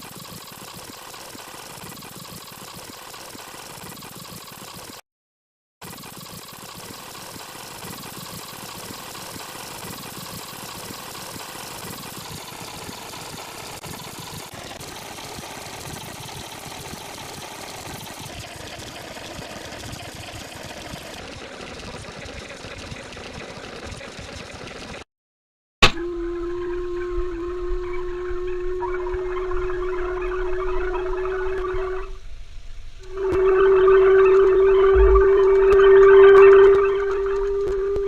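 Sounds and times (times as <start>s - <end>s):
fast-forward whir: 0.0s - 5.0s, 5.8s - 25.1s, 25.8s - 38.0s.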